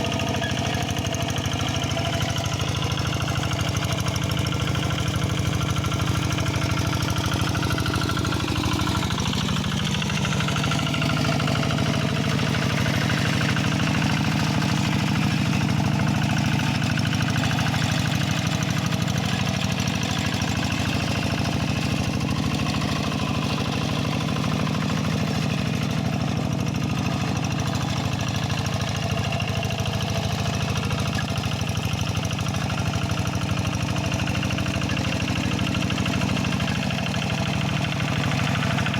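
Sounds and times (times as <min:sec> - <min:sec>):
diesel tractor engine running: 0:00.0 - 0:38.9.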